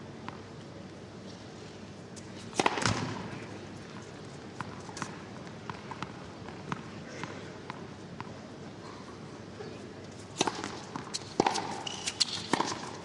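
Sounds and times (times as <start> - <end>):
racket striking tennis ball: 2.6 - 3.2, 10.4 - 13.0.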